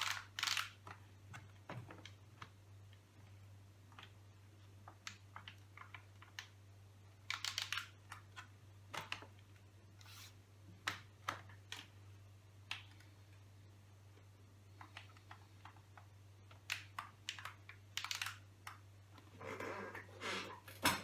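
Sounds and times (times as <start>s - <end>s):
typing on computer keyboard: 7.2s - 8.3s, 14.8s - 18.8s.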